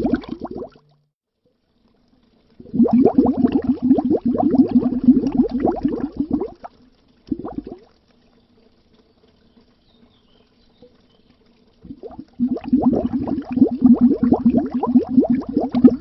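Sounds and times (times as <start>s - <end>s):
underwater bubbling: 0.0s - 1.0s, 2.2s - 16.0s.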